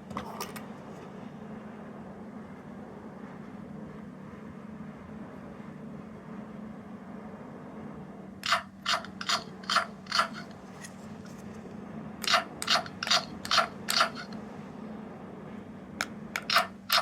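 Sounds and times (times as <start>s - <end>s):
steady low hum: 0.0s - 17.0s
rasping scraping sound effect: 8.4s - 11.0s, 12.3s - 14.4s.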